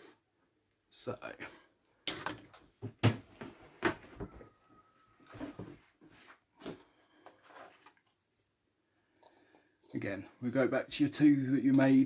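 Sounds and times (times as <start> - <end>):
craft materials rustling: 2.1 - 8.6.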